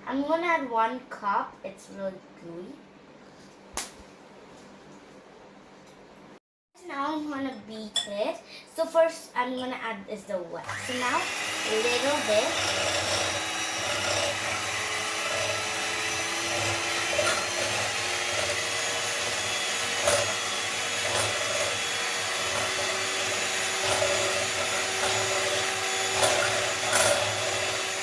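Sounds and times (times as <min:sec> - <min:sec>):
electric mixer beating eggs: 0:10.6 - 0:28.0.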